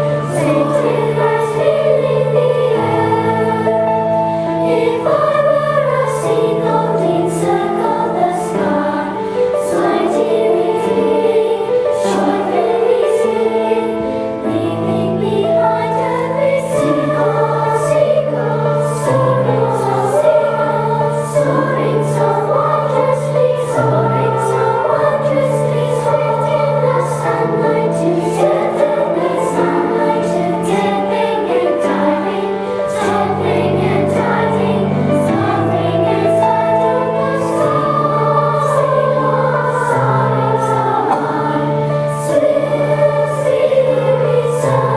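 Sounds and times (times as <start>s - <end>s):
children's choir singing: 0.0s - 44.9s.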